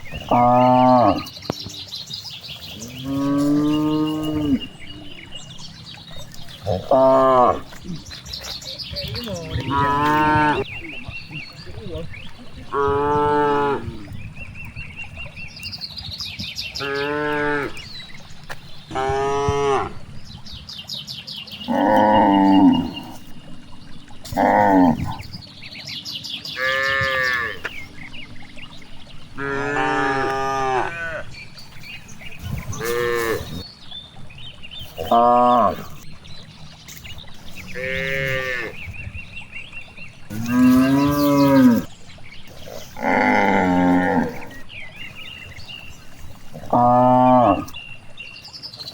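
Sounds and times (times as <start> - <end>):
cows mooing: 0.0 - 1.3, 2.7 - 14.4, 16.8 - 20.4, 21.7 - 25.4, 26.6 - 33.6, 34.8 - 36.2, 36.9 - 39.0, 40.1 - 47.8.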